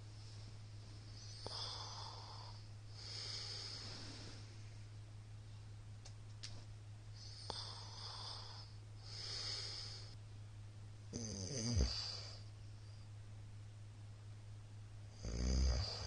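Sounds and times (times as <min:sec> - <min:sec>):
man snoring: 0:01.2 - 0:03.8, 0:07.4 - 0:10.1, 0:11.1 - 0:12.5, 0:15.1 - 0:16.0.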